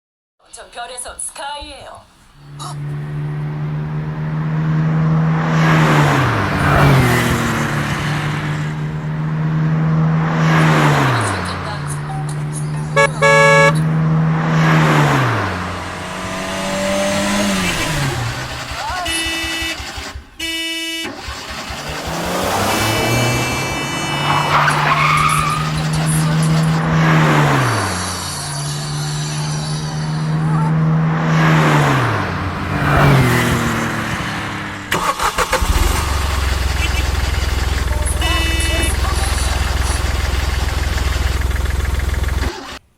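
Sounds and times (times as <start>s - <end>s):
car driving past: 2.0s - 20.4s, 21.2s - 42.6s
tyre squeal: 2.2s - 4.4s, 14.6s - 31.0s.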